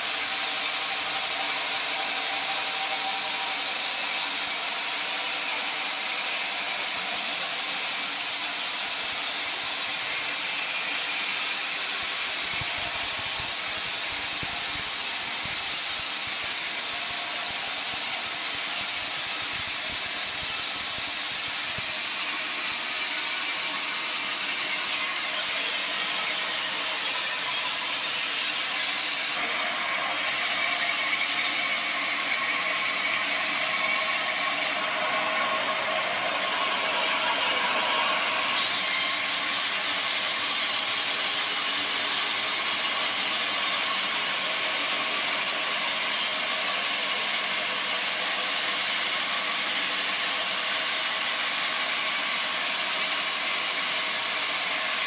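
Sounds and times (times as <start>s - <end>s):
sawmill saw cutting log: 0.0s - 55.0s.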